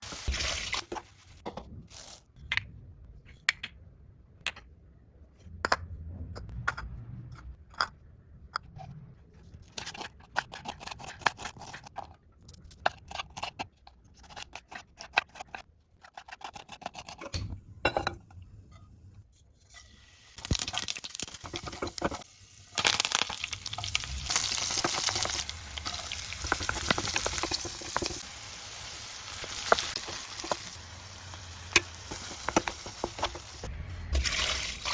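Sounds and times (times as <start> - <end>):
food sizzling in hot oil: 0.0 - 1.4, 19.7 - 34.9.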